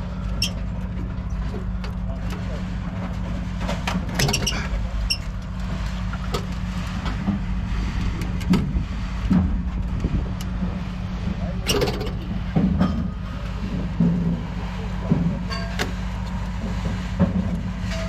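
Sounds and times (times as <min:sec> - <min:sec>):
vehicle engine idling: 0:00.0 - 0:18.0
metal scrap clicking and knocking: 0:03.7 - 0:07.4, 0:11.6 - 0:14.2.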